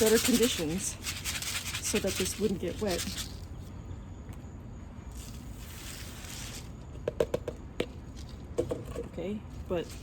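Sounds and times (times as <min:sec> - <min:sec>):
bird seed rustling in plastic tube: 0:00.0 - 0:03.7
plastic tube clicks and knocks: 0:07.0 - 0:08.0.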